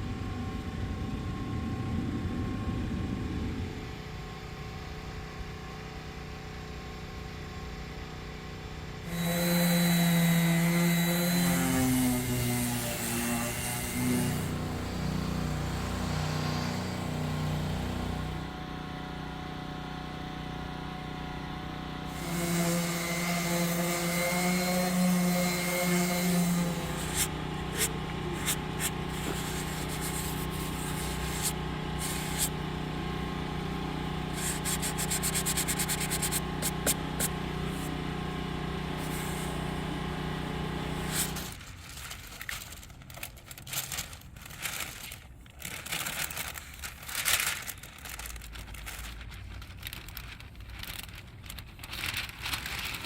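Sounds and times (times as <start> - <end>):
power tool motor running: 9.0 - 41.6.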